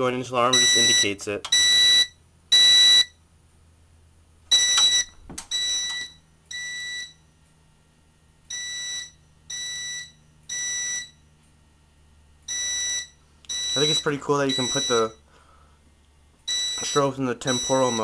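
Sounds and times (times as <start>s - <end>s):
fire alarm electronic tones: 0.5s - 3.2s, 4.5s - 7.3s, 8.5s - 11.2s, 12.5s - 15.2s, 16.5s - 18.0s.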